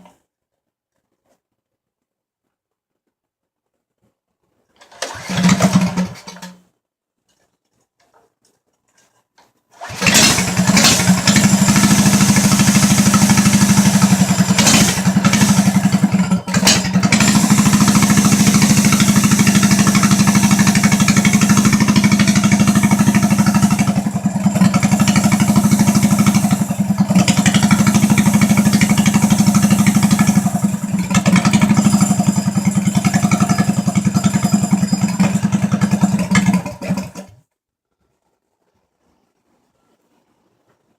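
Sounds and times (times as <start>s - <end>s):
small engine running loudly: 9.8s - 37.3s.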